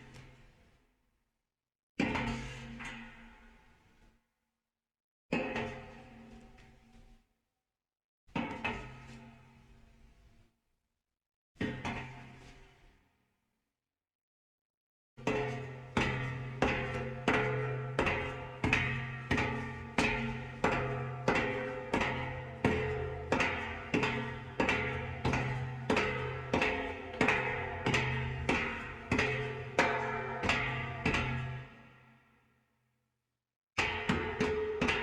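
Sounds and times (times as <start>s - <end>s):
footsteps on steel staircase: 16.0s - 31.8s.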